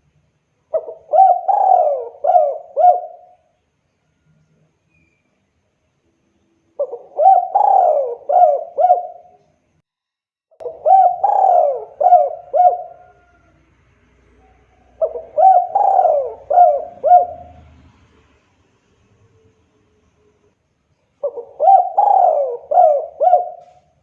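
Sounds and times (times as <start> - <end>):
dove cooing: 0.7 - 3.5, 6.8 - 9.4, 10.6 - 13.7, 14.3 - 17.7, 21.2 - 24.0.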